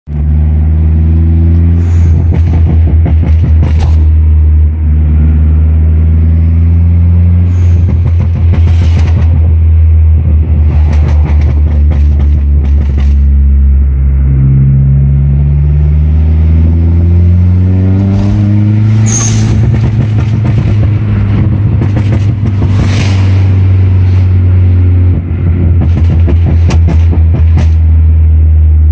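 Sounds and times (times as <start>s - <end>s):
car engine revving: 0.1s - 28.9s
exhaust backfire pops: 1.5s - 4.2s, 7.8s - 13.6s, 18.1s - 28.3s.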